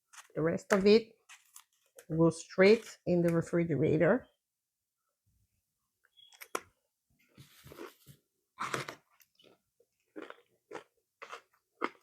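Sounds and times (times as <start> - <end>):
rustling and crinkling packaging: 1.2 - 3.0.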